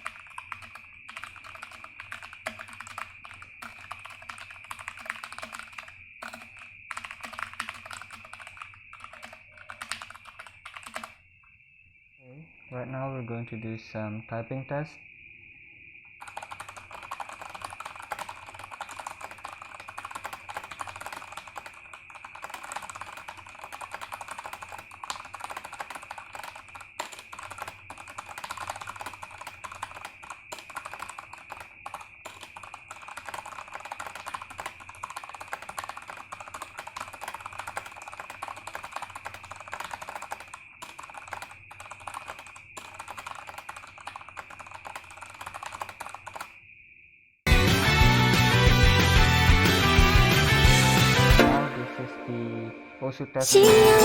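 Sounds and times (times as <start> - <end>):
mechanical keyboard typing: 0.0 - 11.2, 16.2 - 46.6
steady high-pitched tone: 51.4 - 54.0.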